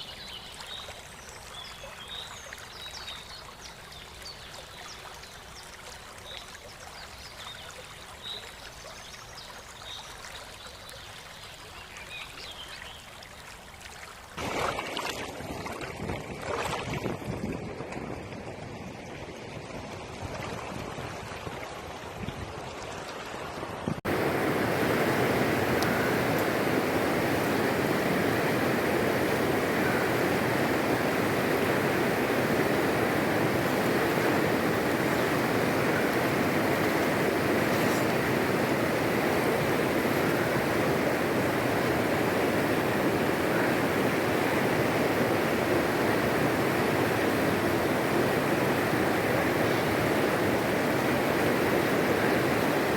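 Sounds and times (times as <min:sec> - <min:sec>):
river water rushing: 0:24.1 - 0:52.9.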